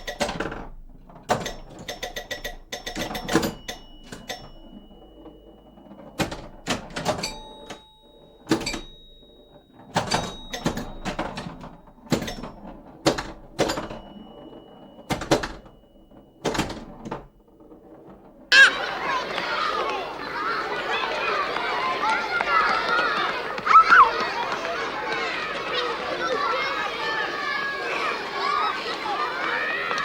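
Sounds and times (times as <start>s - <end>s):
sharp knocks and clacks: 0.0s - 18.6s
thin ringing tone: 2.0s - 13.0s, 13.7s - 16.5s.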